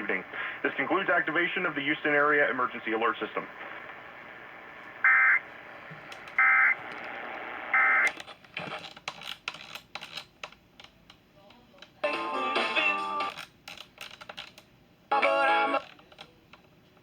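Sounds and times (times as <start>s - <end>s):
radio audio: 0.0s - 8.9s.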